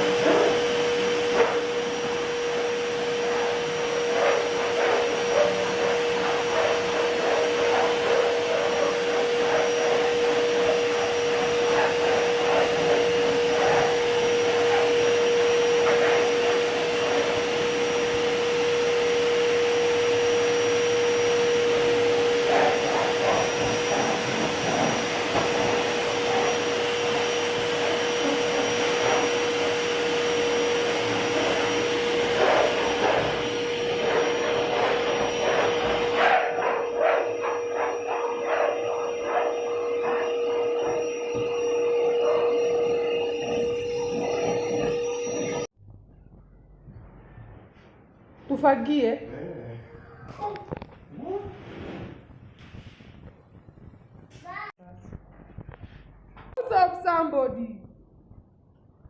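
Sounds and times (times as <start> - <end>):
vacuum cleaner running: 0.0 - 45.8.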